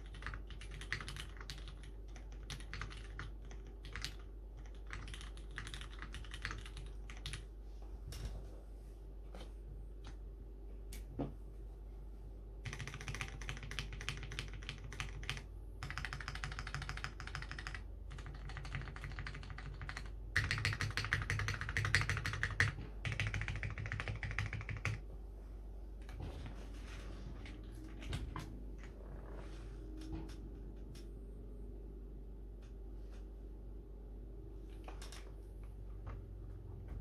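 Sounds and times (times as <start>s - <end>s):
mechanical keyboard typing: 0.0s - 7.5s, 12.6s - 25.0s, 34.7s - 36.3s.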